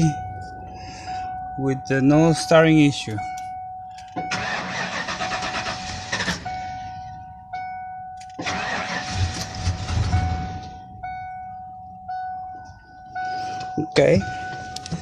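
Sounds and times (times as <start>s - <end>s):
dashboard warning chime: 0.0s - 15.0s
engine starter cranking: 4.0s - 6.5s, 8.2s - 10.6s.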